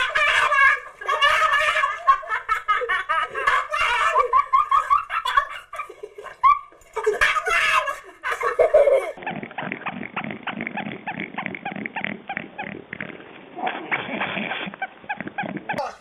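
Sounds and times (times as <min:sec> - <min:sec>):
person laughing: 0:00.0 - 0:09.7.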